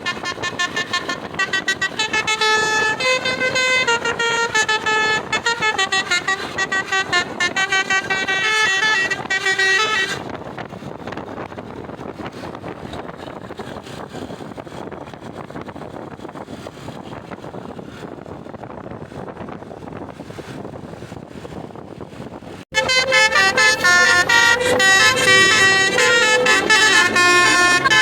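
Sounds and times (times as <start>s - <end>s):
bus horn playing a tune: 0.0s - 10.4s, 22.7s - 28.0s
roadside traffic: 0.0s - 28.0s.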